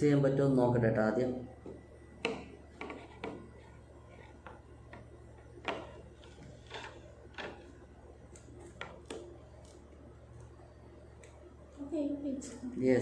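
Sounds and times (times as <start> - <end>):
steady low hum: 0.0 - 13.0
plastic clicks and knocks: 1.6 - 3.5, 4.4 - 9.8.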